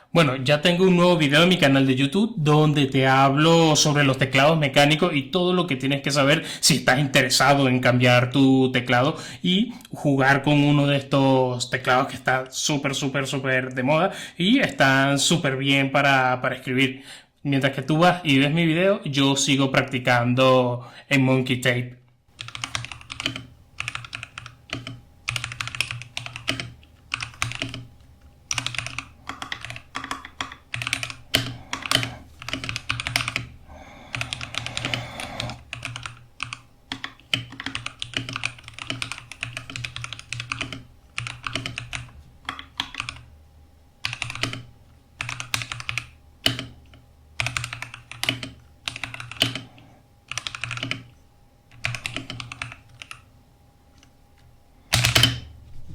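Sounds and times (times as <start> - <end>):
mechanical keyboard typing: 22.4 - 27.9, 28.5 - 43.3, 44.0 - 46.8, 47.4 - 49.7, 50.3 - 51.1, 51.7 - 53.3, 54.9 - 55.4.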